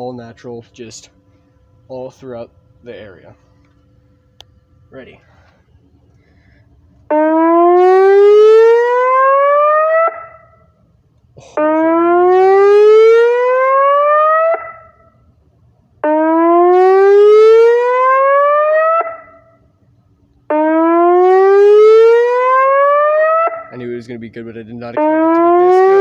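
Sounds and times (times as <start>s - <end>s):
siren echo: 7.0s - 15.4s, 16.0s - 24.1s, 24.8s - 26.0s
siren whoop rising sweep: 7.1s - 10.6s, 11.6s - 15.0s, 16.0s - 19.4s, 20.5s - 23.7s, 25.0s - 26.0s.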